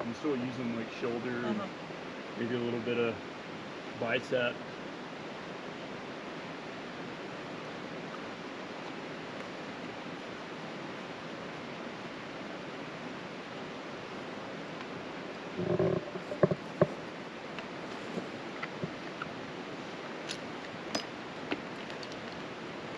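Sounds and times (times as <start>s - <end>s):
steady rushing hiss: 0.0s - 22.9s.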